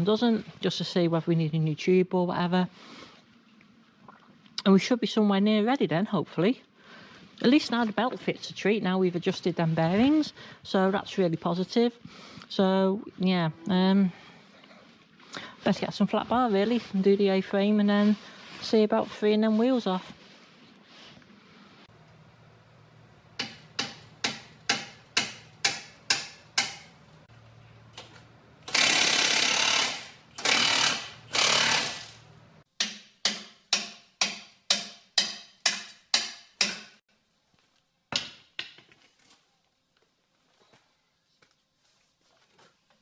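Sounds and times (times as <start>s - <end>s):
low steady hum: 21.9s - 32.6s
hammer striking metal: 23.3s - 27.3s, 32.8s - 37.0s
harsh noise bursts: 28.0s - 32.6s.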